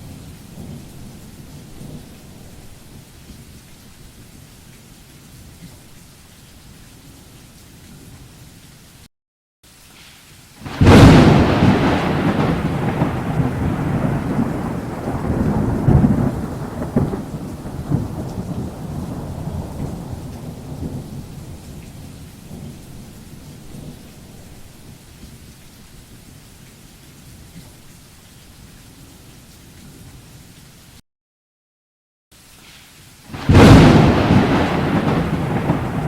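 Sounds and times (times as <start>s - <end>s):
rain hiss: 0.0s - 31.0s, 32.3s - 36.0s
thunderclap rumbling: 10.6s - 24.7s, 33.3s - 36.0s.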